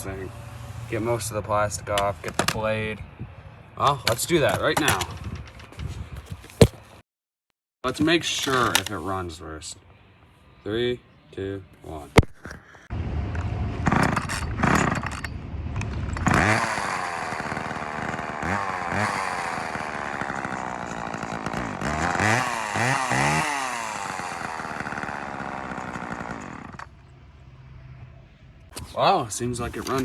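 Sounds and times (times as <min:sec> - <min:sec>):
chainsaw engine running: 0:13.5 - 0:15.2, 0:15.8 - 0:27.0.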